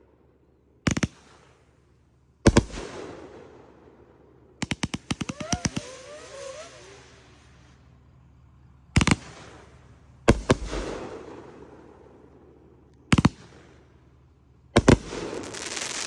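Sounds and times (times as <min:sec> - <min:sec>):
heavy firework shots: 0:00.9 - 0:01.8, 0:02.4 - 0:07.9, 0:08.9 - 0:16.0
firework bangs: 0:04.7 - 0:07.9, 0:09.0 - 0:12.3, 0:14.8 - 0:16.0
firework crackling: 0:04.8 - 0:08.0, 0:14.8 - 0:16.0
firework whistles: 0:05.2 - 0:08.2, 0:14.9 - 0:16.0.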